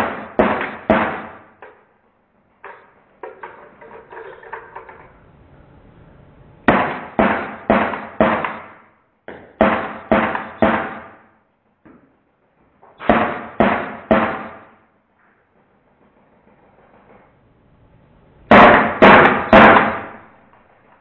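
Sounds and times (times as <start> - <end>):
bb gun shots with ringing tail: 0.0 - 1.5, 6.7 - 8.8, 13.0 - 14.8, 18.5 - 20.3.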